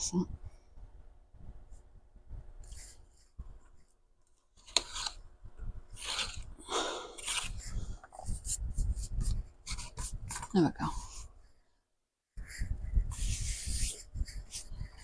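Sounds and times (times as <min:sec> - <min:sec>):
blade scraping cutting strokes: 0:05.9 - 0:07.7.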